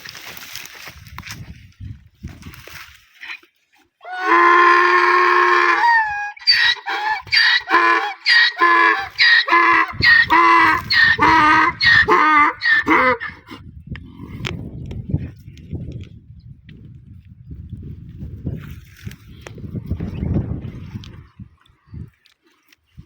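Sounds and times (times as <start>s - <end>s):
donkey braying: 4.0s - 13.6s.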